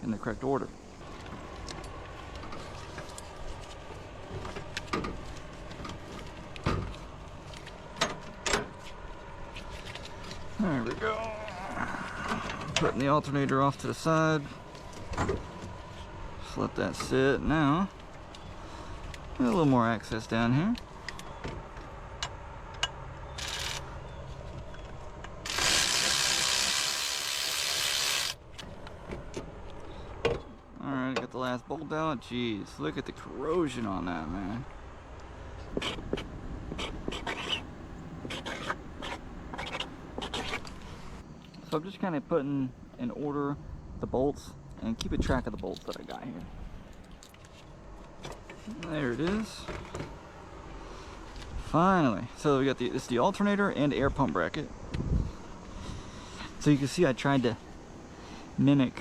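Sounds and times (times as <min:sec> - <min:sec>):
loud steady hiss: 0:25.4 - 0:28.4.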